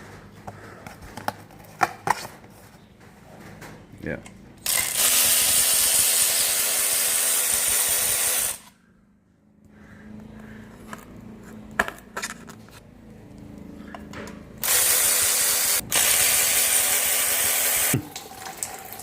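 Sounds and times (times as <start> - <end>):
loud steady hissing from tool: 14.6 - 18.0.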